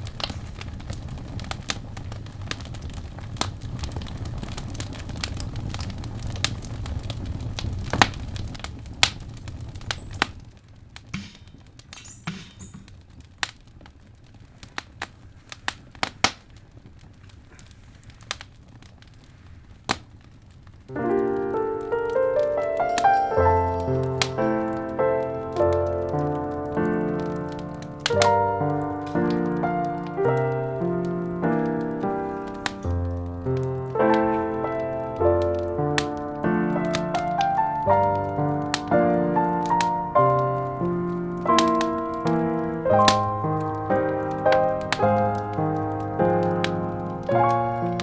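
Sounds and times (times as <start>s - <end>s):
wood fire crackling and popping: 0.0s - 48.0s
piano music: 20.9s - 48.0s.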